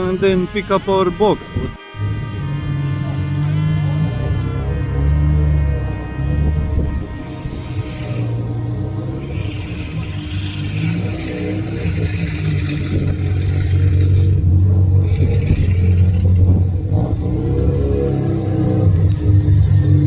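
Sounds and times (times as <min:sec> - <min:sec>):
car engine running and revving: 0:00.0 - 0:20.0.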